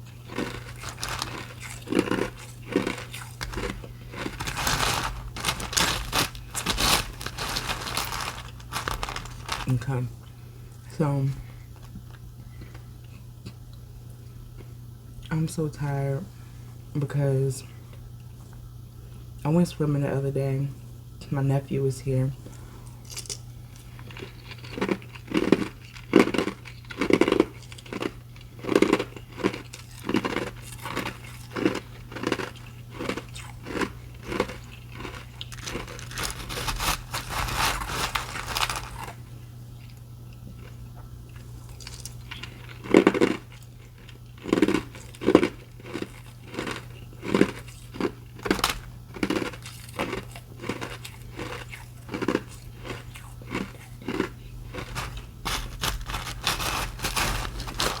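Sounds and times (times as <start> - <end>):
ice being chewed: 0.0 - 10.1, 23.1 - 39.2, 39.8 - 58.0.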